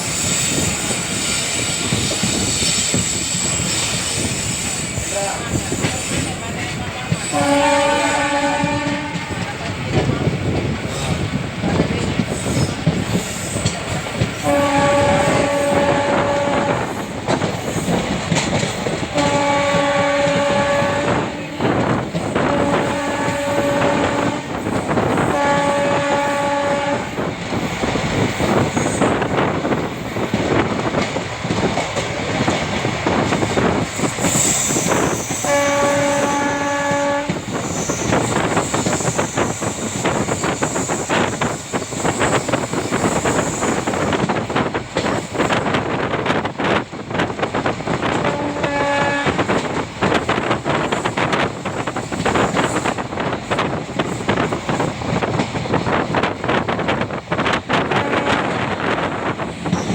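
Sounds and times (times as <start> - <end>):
train coaches clattering on track: 0.0 - 59.9
electric locomotive horn blasts: 7.3 - 9.4, 14.4 - 17.0, 19.1 - 27.2, 35.0 - 39.5, 48.0 - 49.7, 57.8 - 59.9.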